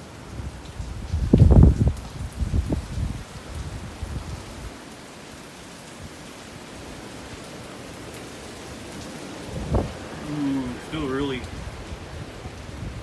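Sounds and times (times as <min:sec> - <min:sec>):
torrential rain pouring: 0:00.0 - 0:13.0
wind buffeting microphone: 0:00.2 - 0:04.8, 0:08.7 - 0:13.0.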